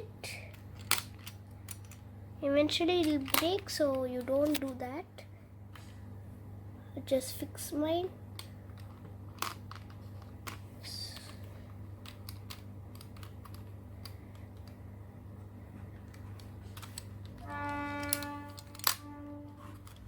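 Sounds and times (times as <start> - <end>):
plastic cube pieces clicking: 11.2 - 14.8.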